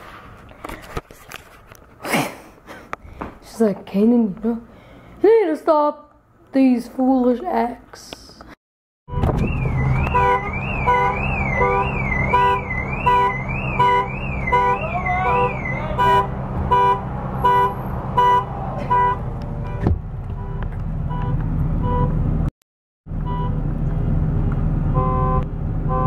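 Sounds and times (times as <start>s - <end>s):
car alarm short beeps: 9.1s - 16.9s, 20.4s - 22.1s
car alarm warbling siren: 9.1s - 19.2s.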